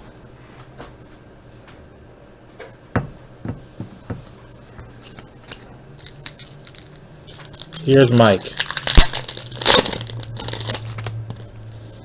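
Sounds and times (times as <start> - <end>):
steady low hum: 0.0 - 12.0
foil wrapper crinkling: 4.9 - 12.0.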